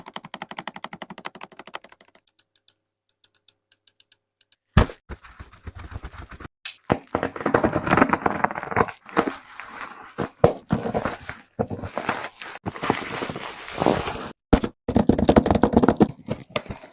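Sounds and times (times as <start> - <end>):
packaging crinkling and tearing: 5.1 - 14.4.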